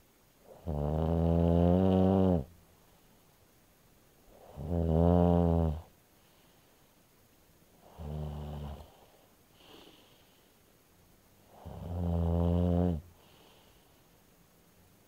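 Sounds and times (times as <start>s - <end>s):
rasping snores: 0.5s - 2.5s, 4.3s - 5.9s, 7.8s - 9.0s, 11.5s - 13.1s
faint breath out: 8.8s - 10.7s, 13.1s - 14.2s.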